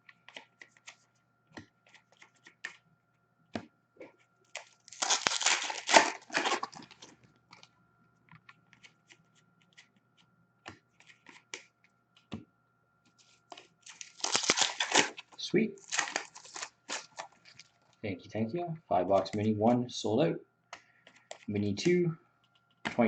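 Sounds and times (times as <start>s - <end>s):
plastic wrapper tearing: 4.6s - 7.2s, 13.8s - 18.0s.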